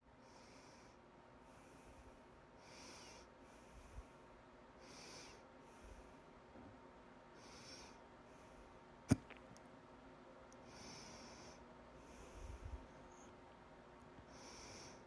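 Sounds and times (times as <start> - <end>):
person breathing: 0.2 - 6.3, 7.4 - 8.8, 10.6 - 13.4, 14.3 - 15.0.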